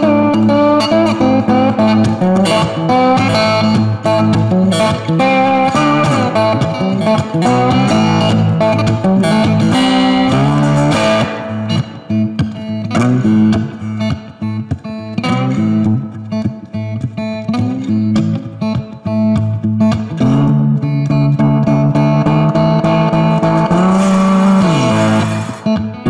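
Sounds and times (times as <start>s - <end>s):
bass line: 0.0s - 14.6s, 20.1s - 26.0s
guitar background music: 0.0s - 26.0s.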